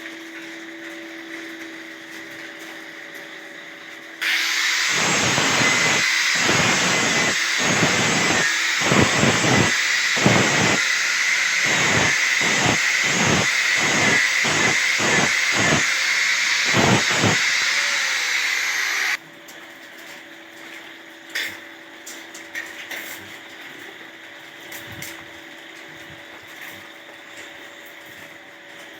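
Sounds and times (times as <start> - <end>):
angle grinder on metal: 4.2 - 19.2.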